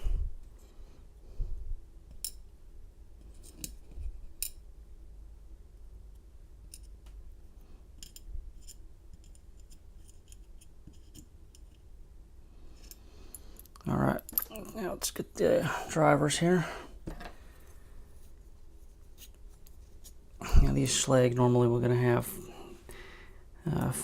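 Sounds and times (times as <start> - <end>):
small metallic clicks and taps: 8.0 - 11.8.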